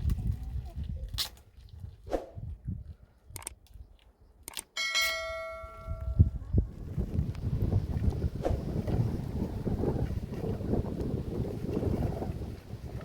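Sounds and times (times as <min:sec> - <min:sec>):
low wind rumble: 0:00.0 - 0:04.4, 0:05.2 - 0:13.0
metal object struck ringing: 0:04.8 - 0:06.2.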